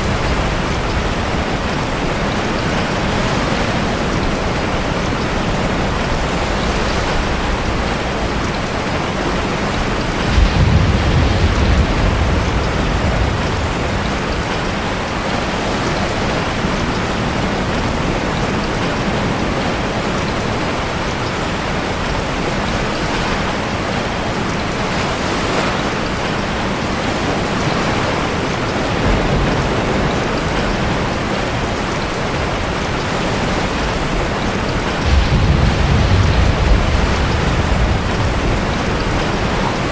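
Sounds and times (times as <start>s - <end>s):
heavy rain: 0.0s - 39.9s
ocean surf in a cave: 0.0s - 39.9s
deep rumbling surge: 4.3s - 15.2s, 35.0s - 39.9s.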